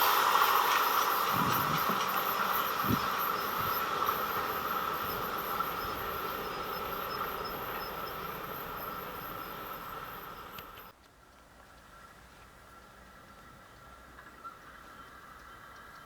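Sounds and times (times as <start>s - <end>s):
train wheels on rails: 0.0s - 11.0s.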